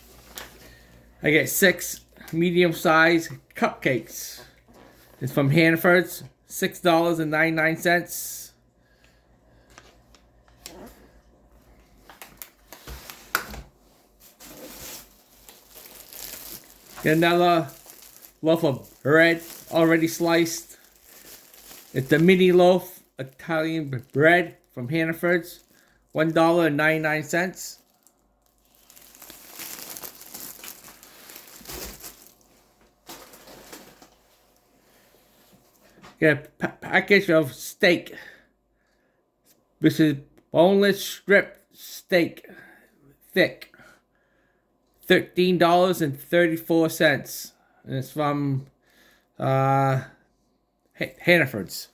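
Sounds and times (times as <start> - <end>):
plastic packaging crinkling: 12.0 - 34.6.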